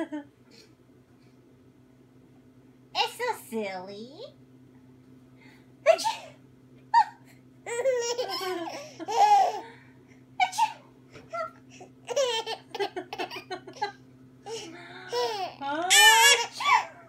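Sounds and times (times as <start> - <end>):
baby giggling: 7.0 - 9.6, 11.3 - 14.0.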